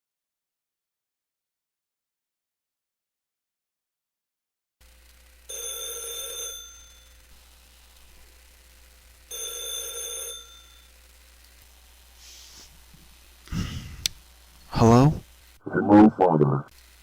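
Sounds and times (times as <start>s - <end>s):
telephone ringing: 5.5s - 7.3s, 9.3s - 11.0s.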